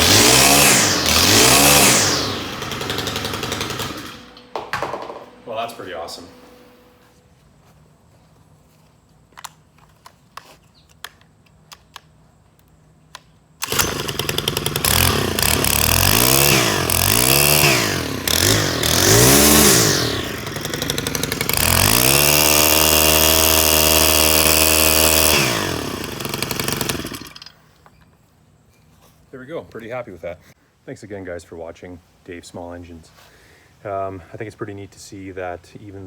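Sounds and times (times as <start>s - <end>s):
string trimmer engine revving: 0.0s - 6.2s, 13.6s - 27.5s.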